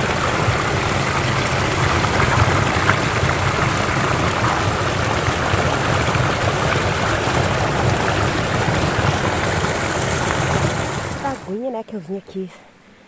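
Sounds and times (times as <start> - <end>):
stream water rushing: 0.0 - 11.6.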